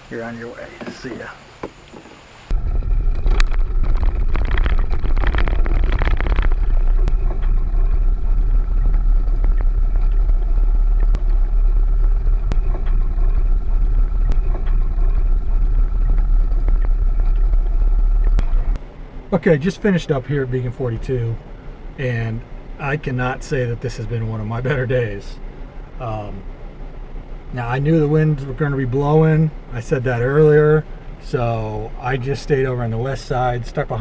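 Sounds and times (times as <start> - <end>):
outboard motor running: 0.6 - 18.8
wind rumble on microphone: 2.4 - 18.8.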